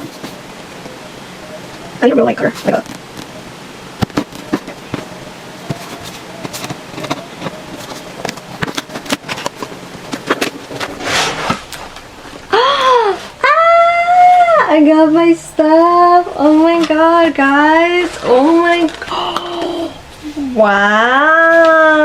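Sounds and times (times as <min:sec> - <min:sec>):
packaging crackling: 0:04.0 - 0:13.6, 0:15.6 - 0:20.6.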